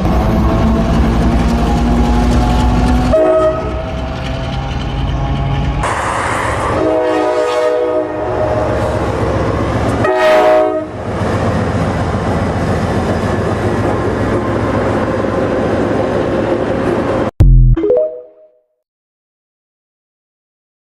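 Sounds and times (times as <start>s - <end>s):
train rumbling: 0.0s - 17.3s
locomotive air horn blasts: 3.1s - 3.9s, 6.6s - 8.8s, 10.0s - 11.0s.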